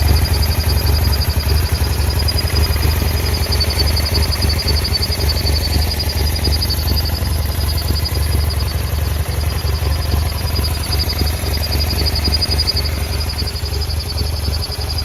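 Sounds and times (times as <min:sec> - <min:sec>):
motorcycle engine idling roughly: 0:00.0 - 0:15.0.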